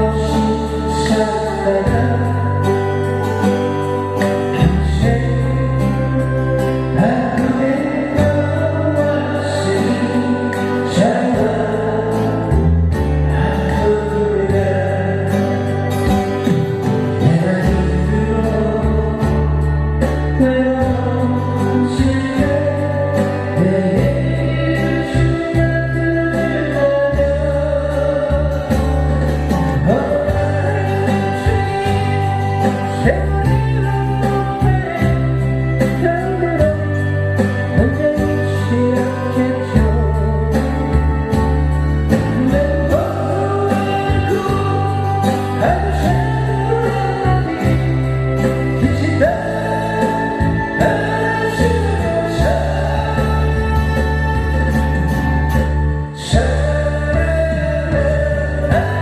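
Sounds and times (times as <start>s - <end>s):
backing track bass and guitar: 0.0s - 59.0s
solo voice singing ballad: 0.0s - 59.0s.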